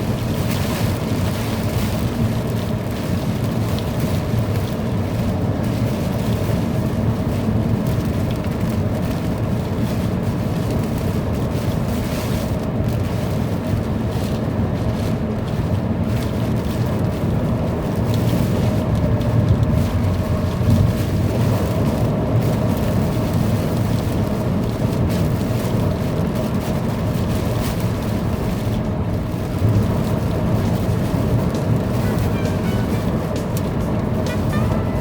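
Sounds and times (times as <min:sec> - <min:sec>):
heavy rain downpour roar: 0:00.0 - 0:35.0
wind buffeting microphone: 0:12.6 - 0:35.0.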